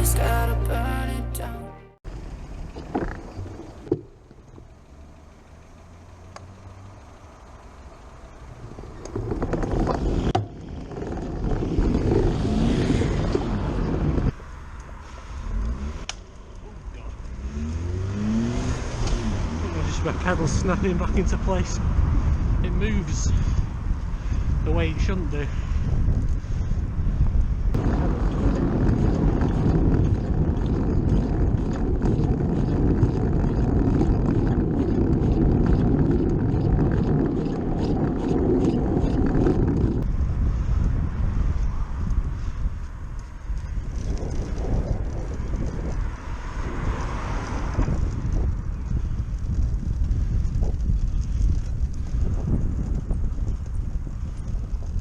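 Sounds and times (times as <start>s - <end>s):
low traffic rumble: 2.0s - 55.0s
bicycle tyre noise: 2.1s - 17.6s, 18.8s - 55.0s
wind on microphone: 9.1s - 14.4s, 17.3s - 55.0s
car going by: 11.7s - 24.6s, 39.6s - 50.4s.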